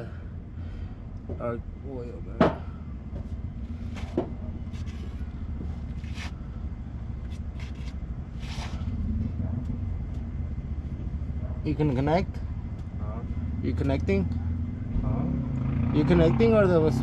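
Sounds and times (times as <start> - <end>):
steady low rumble: 0.0 - 15.5
light scrape: 3.9 - 5.3, 6.0 - 6.4, 7.2 - 8.9.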